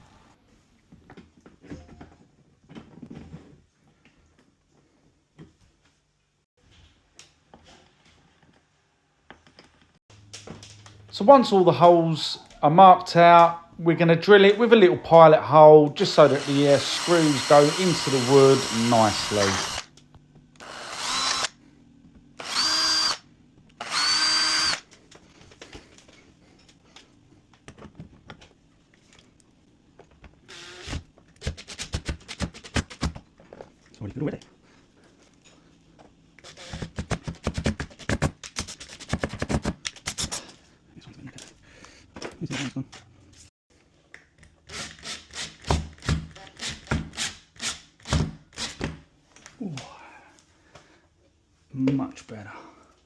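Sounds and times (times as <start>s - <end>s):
power drill boring into wood: 16.1s - 19.9s, 20.6s - 21.5s, 22.4s - 23.2s, 23.8s - 24.9s, 30.5s - 31.8s, 36.4s - 36.9s.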